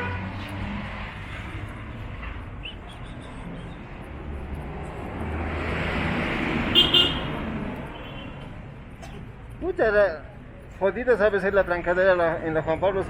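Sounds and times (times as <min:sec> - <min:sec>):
motor vehicle passing: 0:00.0 - 0:09.4.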